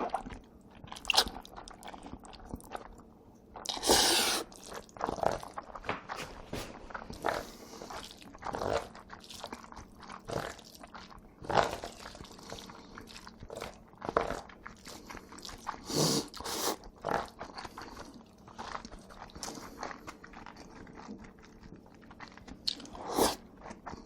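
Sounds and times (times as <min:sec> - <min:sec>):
chewing and biting noodles: 0:00.0 - 0:05.8, 0:06.9 - 0:24.0.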